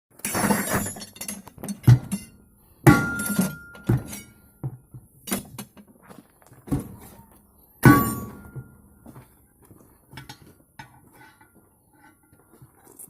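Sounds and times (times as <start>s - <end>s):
hammer striking metal wheel rim: 2.9s - 4.4s, 7.8s - 8.8s.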